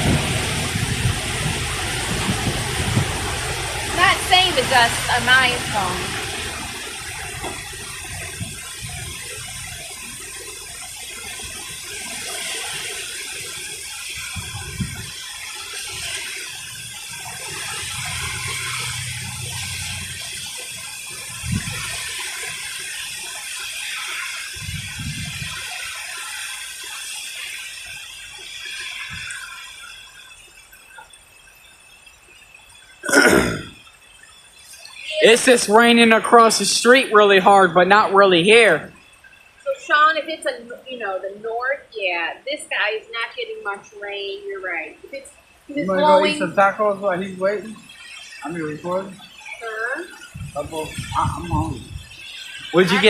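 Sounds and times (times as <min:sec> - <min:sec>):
wind gusts on microphone: 0:00.0 - 0:10.4, 0:11.2 - 0:15.2, 0:21.0 - 0:22.6, 0:24.4 - 0:26.0, 0:50.0 - 0:53.0
rain hissing: 0:00.0 - 0:53.0.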